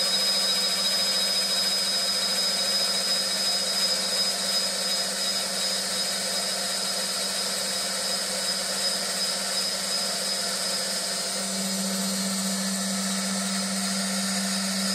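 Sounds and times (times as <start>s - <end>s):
wood lathe machine hiss: 0.0s - 14.9s
low hum: 11.2s - 14.9s.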